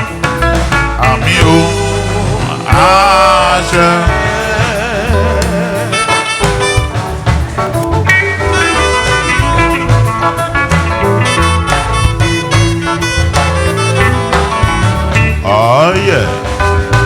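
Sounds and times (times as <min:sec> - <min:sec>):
instrumental band music: 0:00.0 - 0:17.0
person singing: 0:01.0 - 0:06.6, 0:15.4 - 0:16.5.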